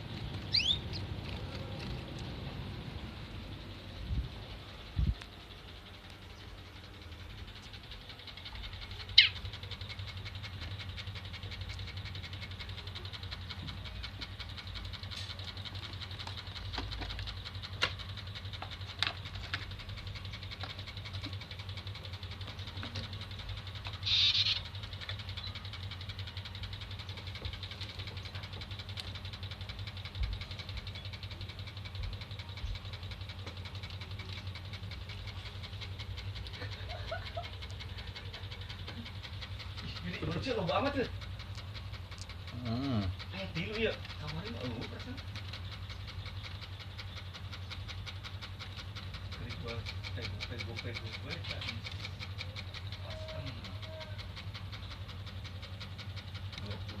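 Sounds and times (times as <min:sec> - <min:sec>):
steady low hum: 0:00.0 - 0:57.0
canaries chirping: 0:00.1 - 0:01.4, 0:09.1 - 0:09.5, 0:24.0 - 0:24.7
faint clicks: 0:07.4 - 0:57.0.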